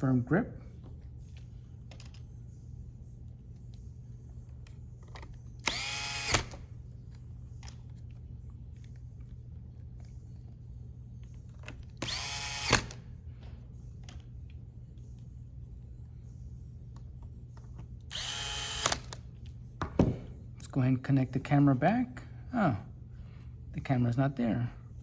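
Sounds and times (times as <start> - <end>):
electric screwdriver whirring: 5.6 - 6.6, 12.0 - 13.0, 18.1 - 19.2.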